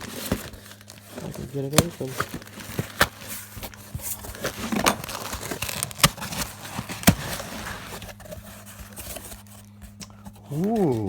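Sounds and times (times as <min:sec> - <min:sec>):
packaging crinkling and tearing: 0:00.0 - 0:11.0.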